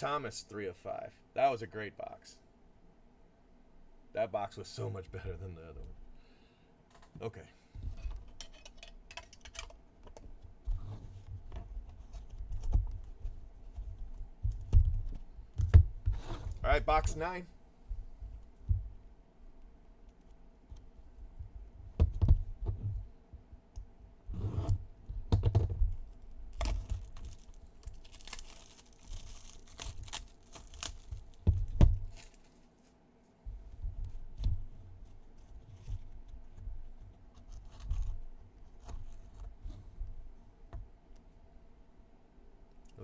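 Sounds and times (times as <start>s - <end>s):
packaging crinkling and tearing: 26.5s - 32.9s.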